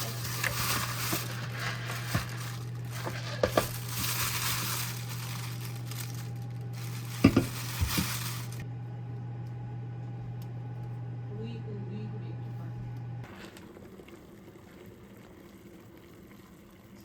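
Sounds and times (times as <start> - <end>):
food sizzling in a pan: 0.0 - 8.6.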